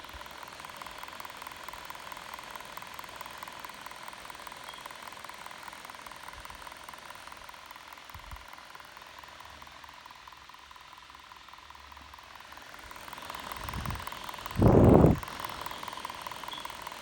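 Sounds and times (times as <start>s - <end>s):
laptop cooling fan whirring: 0.0s - 17.0s.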